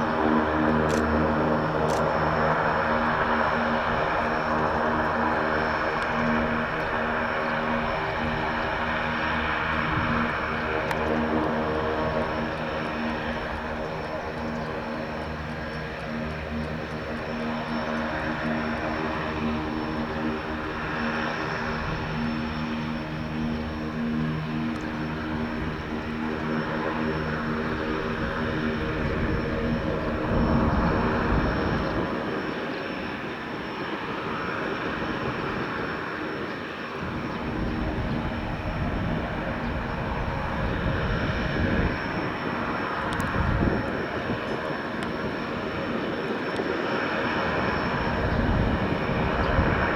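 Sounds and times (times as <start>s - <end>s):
turboprop engine humming: 0.0s - 49.9s.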